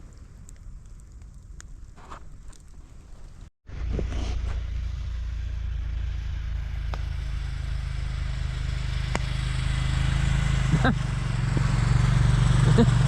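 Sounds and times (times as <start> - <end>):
campfire crackling: 0.0 - 3.5
snowmobile engine humming: 3.7 - 13.0.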